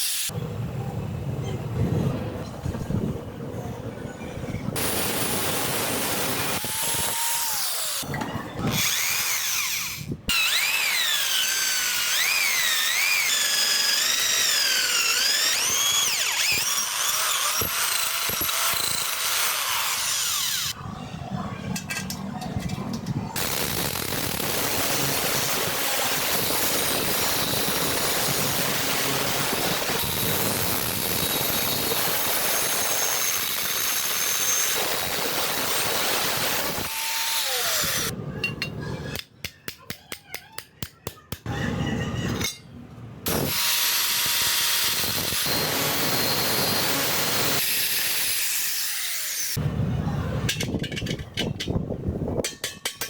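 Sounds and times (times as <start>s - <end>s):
power tool running: 8.7s - 20.8s, 43.3s - 49.6s.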